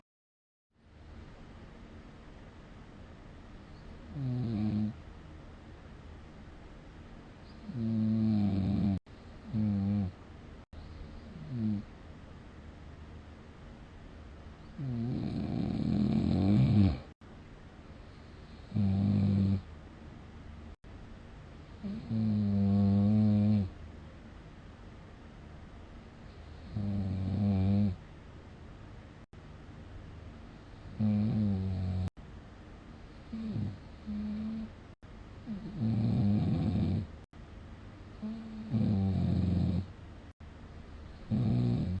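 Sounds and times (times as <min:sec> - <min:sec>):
person snoring: 0:04.1 - 0:05.0, 0:07.6 - 0:10.1, 0:11.3 - 0:11.8, 0:14.8 - 0:17.2, 0:18.6 - 0:19.6, 0:21.8 - 0:23.7, 0:26.5 - 0:28.0, 0:30.8 - 0:32.1, 0:33.3 - 0:34.7, 0:35.4 - 0:37.1, 0:38.2 - 0:39.9, 0:41.2 - 0:42.0.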